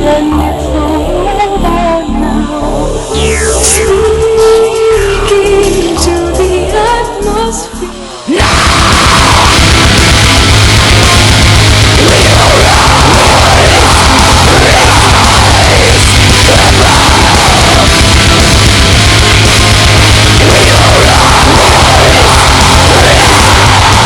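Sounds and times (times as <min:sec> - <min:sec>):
heavy metal music: 0:00.0 - 0:24.0
wailing lead line: 0:00.1 - 0:06.1, 0:08.3 - 0:24.0
fast driving drums: 0:08.4 - 0:24.0.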